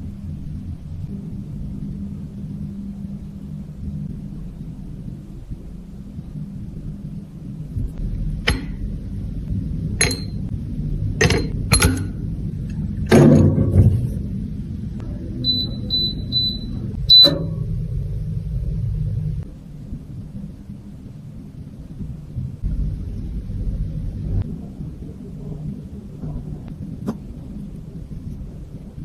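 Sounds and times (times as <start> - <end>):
steady low rumble: 0.0 - 29.0
sharp clicks and knocks: 8.4 - 8.9, 10.0 - 10.5, 11.2 - 13.9
short high beeps: 15.5 - 17.6.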